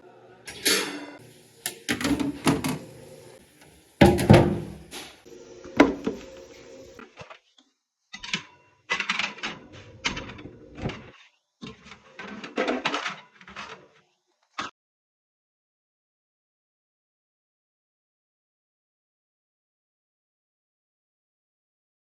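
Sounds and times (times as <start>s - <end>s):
items and shelves knocking: 1.9s - 2.9s, 4.0s - 5.1s, 5.8s - 6.3s
refrigerator door handled: 4.0s - 4.9s.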